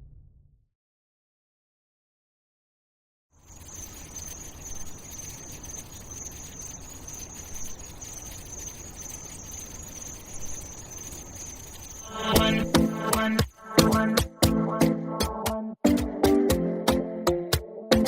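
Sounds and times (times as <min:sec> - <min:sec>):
insects chirring: 0:03.4 - 0:14.2.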